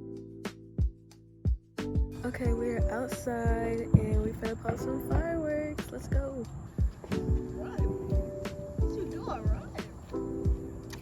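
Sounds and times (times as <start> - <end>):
low drum hits: 2.0 - 5.4, 6.1 - 9.9.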